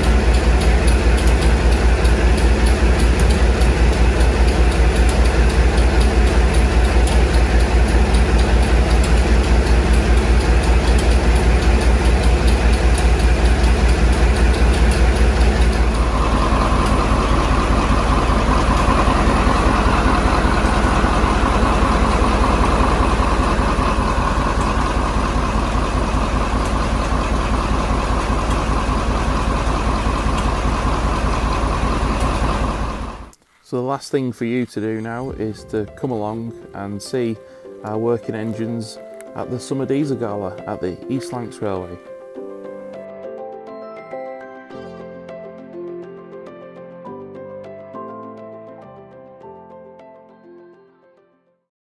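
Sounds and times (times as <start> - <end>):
steady engine whine: 0.0 - 33.4
diesel locomotive engine idling: 0.0 - 33.5.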